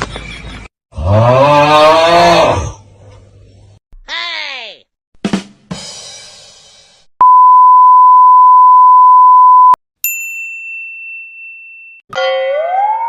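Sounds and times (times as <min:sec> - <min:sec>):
censor bleep: 0:07.2 - 0:09.8
high bell-like ding: 0:10.0 - 0:12.6.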